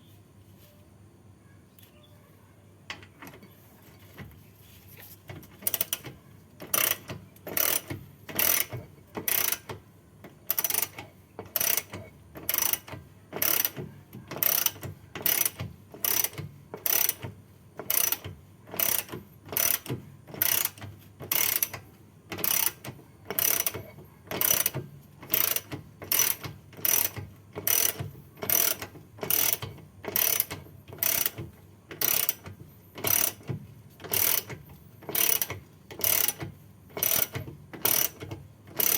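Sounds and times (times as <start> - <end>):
ratchet wrench clicking: 6.7 - 9.7, 10.5 - 11.9, 12.5 - 13.8, 14.4 - 17.2, 17.9 - 18.2, 18.8 - 21.8, 22.4 - 23.8, 24.4 - 31.4, 32.0 - 32.4, 33.0 - 33.5, 34.1 - 36.4, 37.0 - 38.9.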